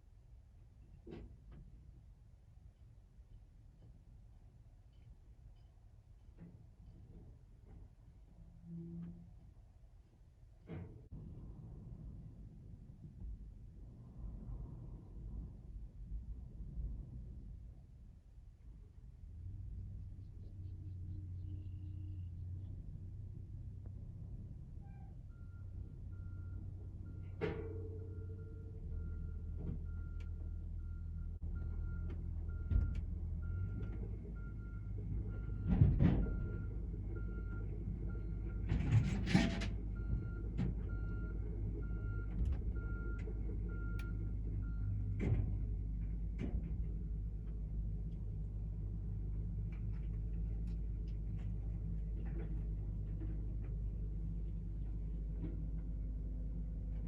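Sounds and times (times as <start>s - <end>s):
excavator diesel engine running: 24.8s - 57.0s.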